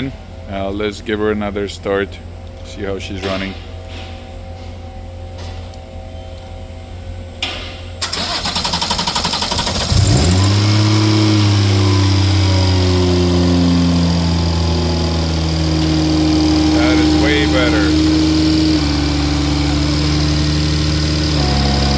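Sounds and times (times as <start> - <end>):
car engine cranking: 8.0 - 21.9
car engine revving and idling: 8.1 - 21.9.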